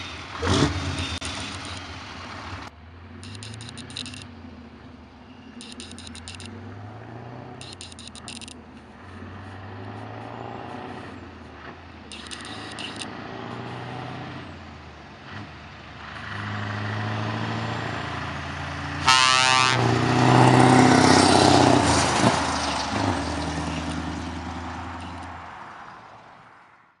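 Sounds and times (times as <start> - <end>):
truck diesel engine passing: 0.0 - 26.8
air horn blast: 19.0 - 20.0.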